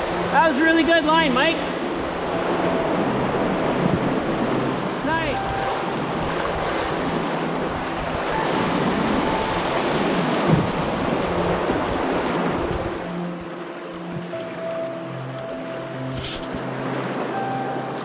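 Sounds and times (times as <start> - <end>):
music: 0.0 - 18.0
whitewater rushing: 0.0 - 18.0
wind buffeting microphone: 1.6 - 13.1.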